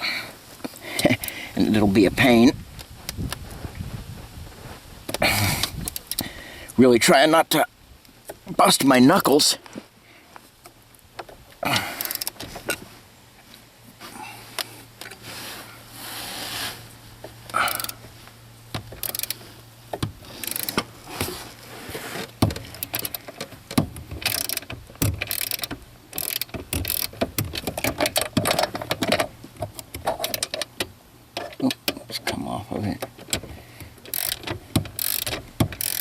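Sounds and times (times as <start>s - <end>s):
socket ratchet clicking: 1.0s - 1.4s, 5.6s - 6.3s, 12.0s - 12.5s, 17.5s - 18.0s, 18.8s - 19.4s, 20.0s - 20.9s, 22.4s - 30.8s, 33.2s - 36.0s.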